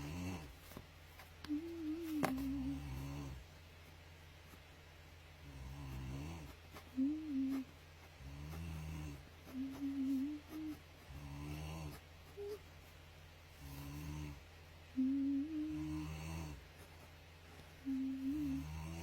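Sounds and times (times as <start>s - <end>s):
person snoring: 0.0s - 0.5s, 1.7s - 3.4s, 8.2s - 10.4s, 11.1s - 12.0s, 13.6s - 14.4s, 15.0s - 16.6s, 17.8s - 19.0s.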